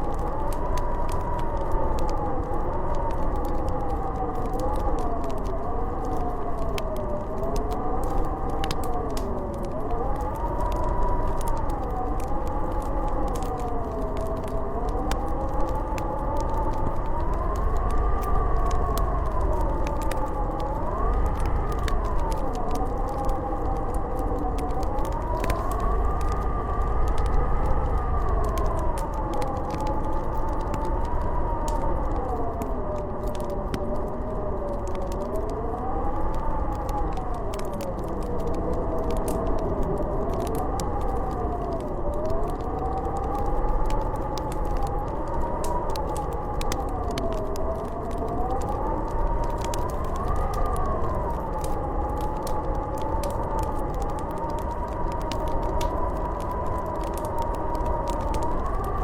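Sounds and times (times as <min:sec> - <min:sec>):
howling wind whistle: 0:00.0 - 0:59.0
low rumble: 0:16.4 - 0:31.8
fireplace crackling: 0:49.1 - 0:59.0.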